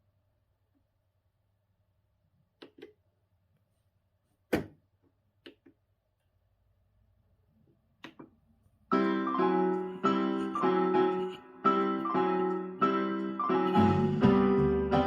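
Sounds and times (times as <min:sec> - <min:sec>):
electric piano chords: 0:08.9 - 0:15.0
bass line: 0:13.5 - 0:15.0.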